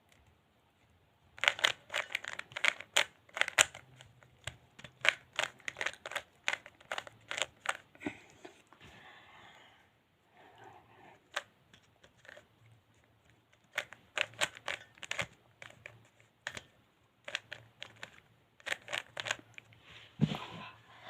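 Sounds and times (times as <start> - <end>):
puzzle cube plastic clicks: 1.4 - 7.9, 12.1 - 12.5, 13.5 - 19.7.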